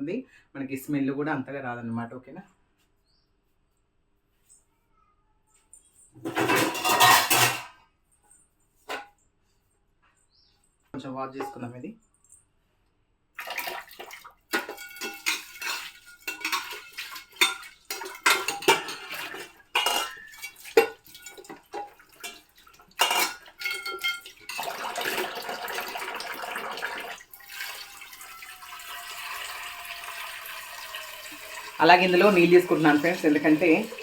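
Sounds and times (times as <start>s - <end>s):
metal pots clanking: 6.2s - 7.8s, 8.9s - 9.1s, 13.4s - 34.0s
tap water running into vessel: 16.5s - 34.0s.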